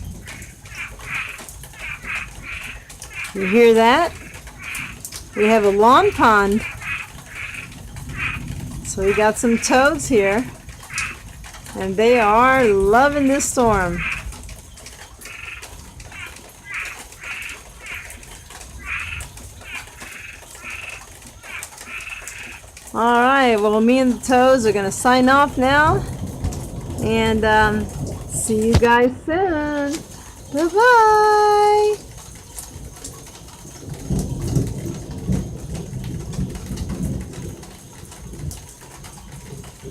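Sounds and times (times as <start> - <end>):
light rain: 0.0 - 39.9
toads calling: 0.2 - 11.3, 13.8 - 14.3, 15.1 - 22.6.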